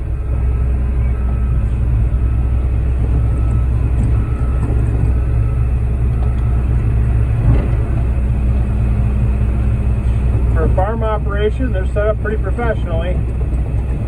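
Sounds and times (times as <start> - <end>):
truck engine running: 0.0 - 14.0.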